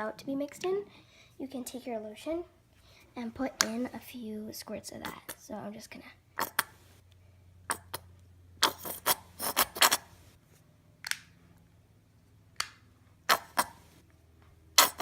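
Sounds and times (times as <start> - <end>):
lotion bottle squirting: 8.6 - 10.2, 13.3 - 13.8, 14.8 - 15.0.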